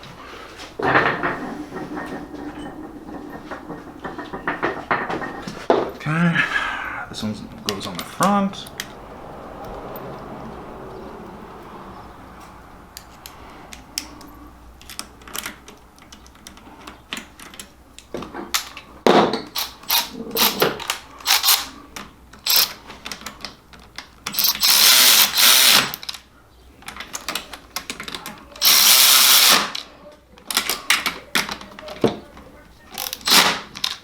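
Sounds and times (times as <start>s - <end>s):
power drill driving bolts: 19.5s - 21.8s, 22.4s - 22.9s, 24.3s - 26.2s, 28.6s - 29.8s, 33.0s - 34.0s.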